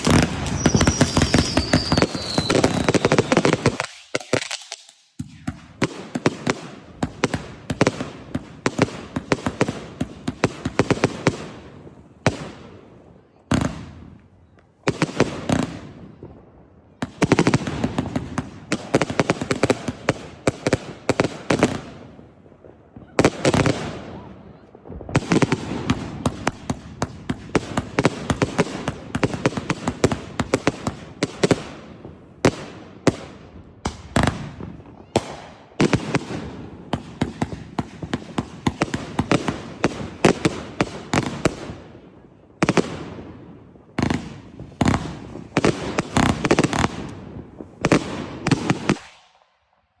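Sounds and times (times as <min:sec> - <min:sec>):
fireworks bangs and crackling: 0:00.0 - 0:49.6.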